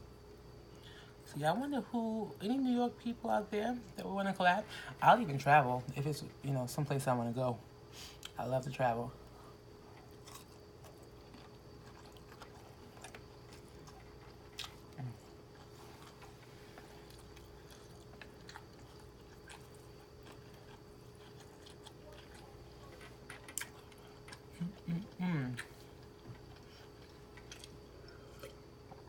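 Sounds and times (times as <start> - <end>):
steady electrical hum: 0.0 - 29.0
person chewing food: 9.8 - 24.6, 25.6 - 29.0
low voice hum: 14.9 - 15.4, 24.5 - 25.9.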